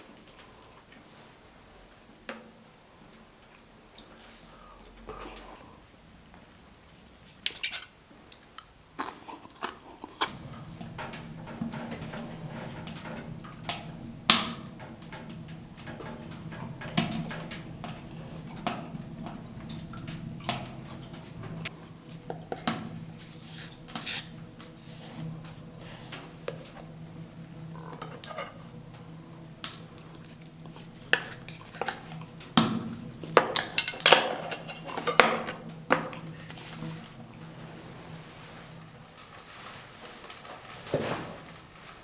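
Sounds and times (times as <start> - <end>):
metal cookware clinking and scraping: 7.4 - 8.0, 10.3 - 37.8
steady low hum: 10.3 - 39.0.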